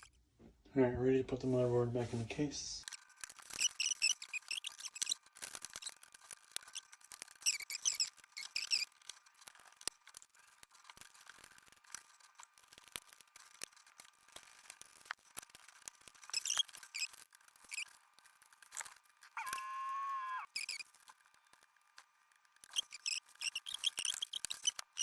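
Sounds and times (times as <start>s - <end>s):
short high squeaks: 2.9s - 9.3s, 16.2s - 18.0s, 18.8s - 21.0s, 22.6s - 25.0s.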